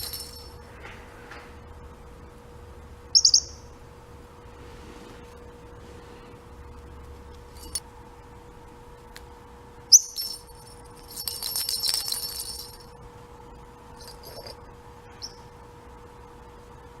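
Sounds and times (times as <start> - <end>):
bird rattling jingling call: 0.0 - 0.6, 9.9 - 12.9, 14.0 - 14.6
parrotlet chirping: 3.1 - 3.8, 9.9 - 10.4, 15.2 - 15.5.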